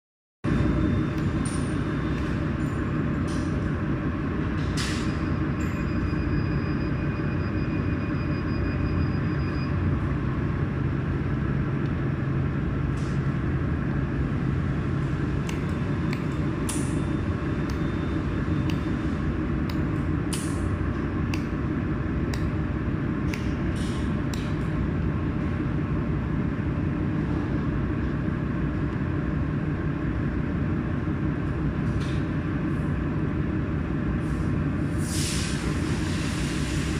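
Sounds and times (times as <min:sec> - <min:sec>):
sharp ticks of laser pulses: 0:17.6 - 0:18.0, 0:18.6 - 0:19.0, 0:22.3 - 0:22.6.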